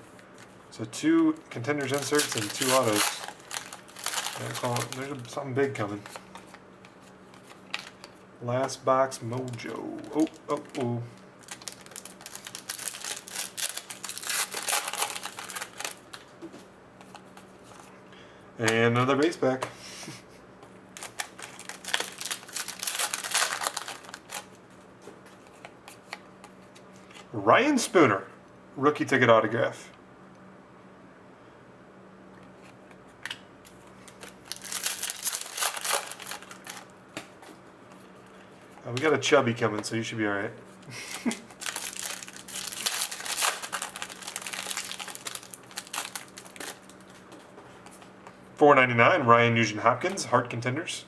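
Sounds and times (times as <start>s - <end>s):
wrapper crinkling: 1.4s - 6.6s, 7.3s - 8.2s, 9.3s - 16.3s, 21.0s - 24.6s, 33.7s - 36.9s, 41.0s - 47.4s.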